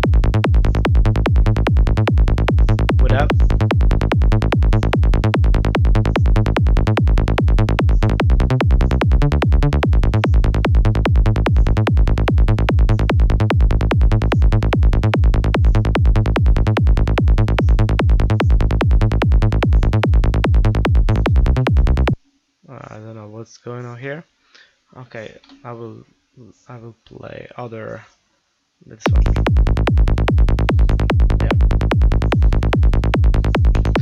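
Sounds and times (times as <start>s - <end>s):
kick drum and synth bass loop: 0.0s - 22.2s, 29.1s - 34.0s.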